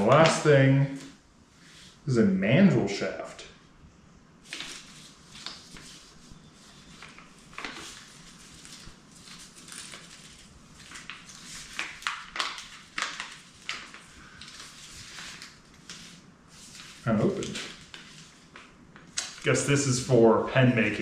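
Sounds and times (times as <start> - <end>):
packaging rustling: 4.5 - 19.6.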